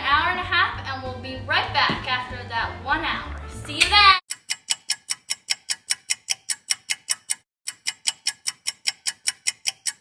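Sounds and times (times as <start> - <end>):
clock ticking rapidly: 4.3 - 10.0.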